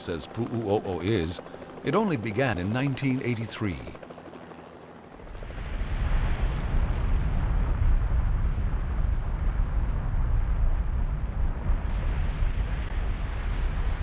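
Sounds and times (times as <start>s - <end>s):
volcano vent roaring: 5.4s - 14.0s.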